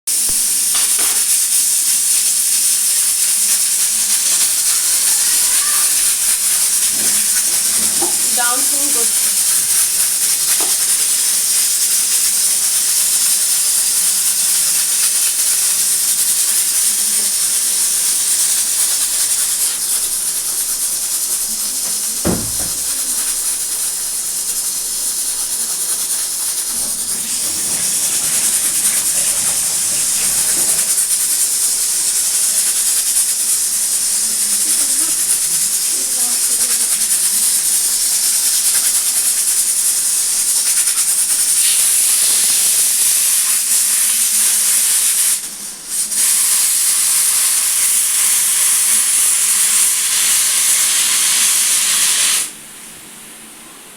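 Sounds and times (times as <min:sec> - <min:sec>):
pressure cooker hissing steam: 0:00.1 - 0:53.9
sharp knock: 0:22.2 - 0:23.1.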